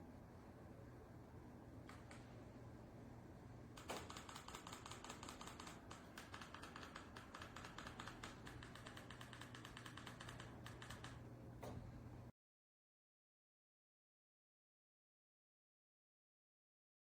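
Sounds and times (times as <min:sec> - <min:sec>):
faint steady hum: 0:00.0 - 0:12.3
rapid irregular clicking: 0:03.8 - 0:11.3.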